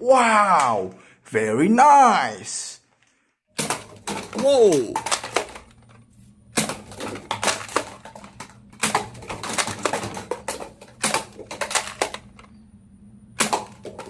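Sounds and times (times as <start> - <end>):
toy guns clicking: 6.6 - 12.5.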